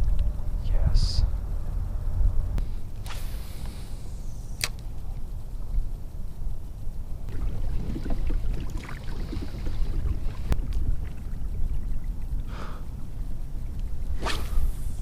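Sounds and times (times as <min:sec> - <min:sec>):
wind rumbling on microphone: 0:00.0 - 0:15.0
brief swish: 0:03.0 - 0:04.8, 0:14.2 - 0:15.0
sharp click: 0:04.4 - 0:04.9.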